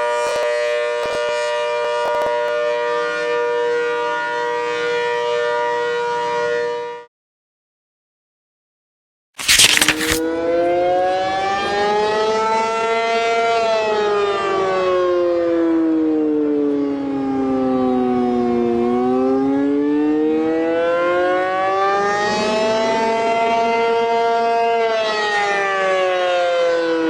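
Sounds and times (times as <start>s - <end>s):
siren wailing: 0.0s - 7.0s, 10.2s - 27.0s.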